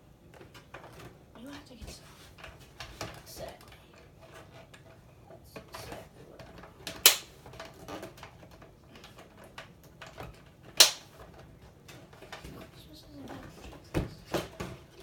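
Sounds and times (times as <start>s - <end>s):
plastic toy clicks and knocks: 5.6s - 12.7s
loud sharp snap: 7.0s - 7.4s, 10.8s - 11.2s.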